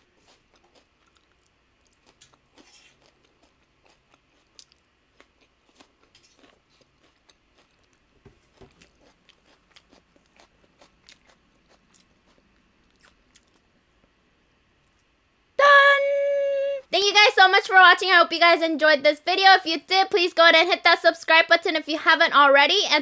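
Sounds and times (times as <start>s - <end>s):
person chewing crunchy food: 0.0s - 14.2s.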